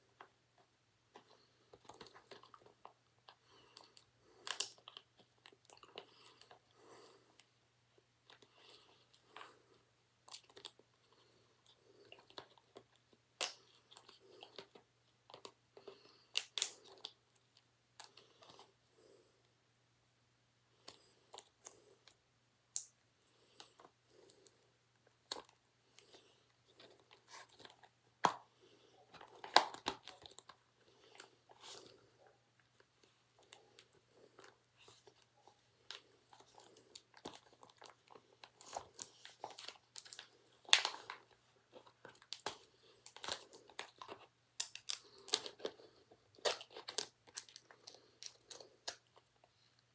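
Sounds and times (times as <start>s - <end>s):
faint steady hum: 0.0s - 49.9s
plastic wrap crinkling: 36.4s - 49.0s.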